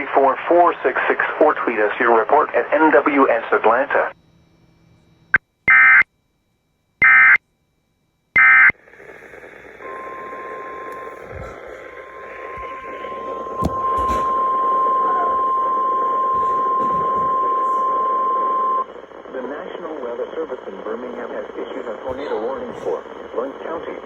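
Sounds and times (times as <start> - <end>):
radio static: 0.0 - 4.2, 8.4 - 24.0
steady alarm tone: 4.1 - 6.2, 7.0 - 24.0
warbling data bursts: 8.4 - 24.0.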